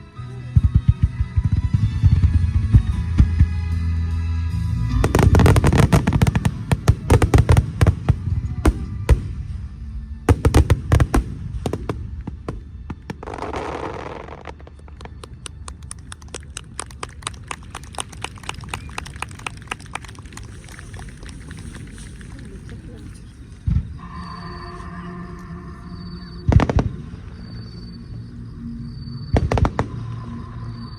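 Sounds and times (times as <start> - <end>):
firework crackling pops: 10.3 - 22.8.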